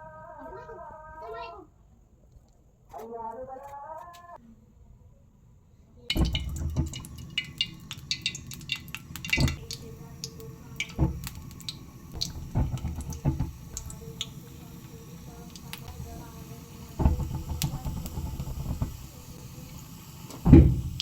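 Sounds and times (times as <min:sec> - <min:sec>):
sharp clicks and light knocks: 0:06.1 - 0:14.4.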